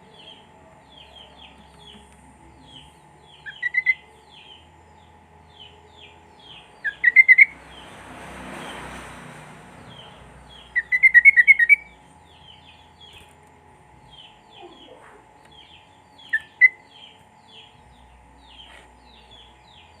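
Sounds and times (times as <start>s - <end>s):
bulbul singing chirps: 0.0s - 20.0s.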